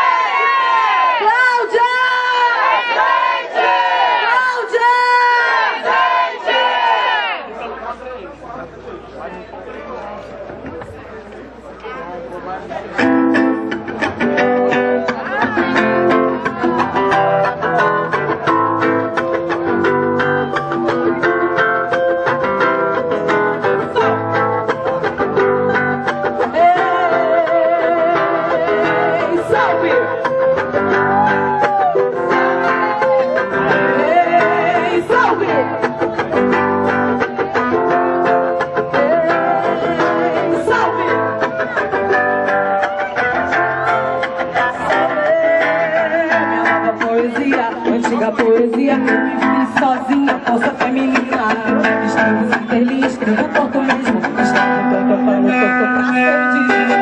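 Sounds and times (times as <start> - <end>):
acoustic guitar playing: 12.4 - 57.0.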